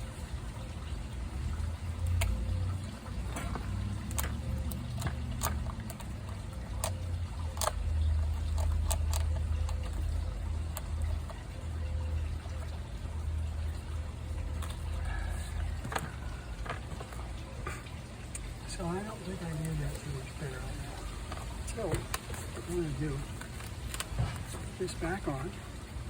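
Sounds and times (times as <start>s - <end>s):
small clicks and taps on chainsaw: 3.4s - 10.1s.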